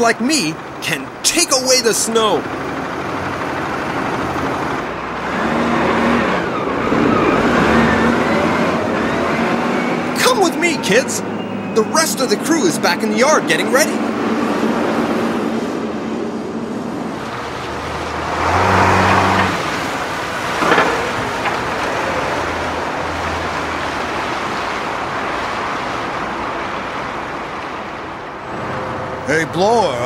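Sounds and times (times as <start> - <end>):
road traffic: 0.0 - 30.0.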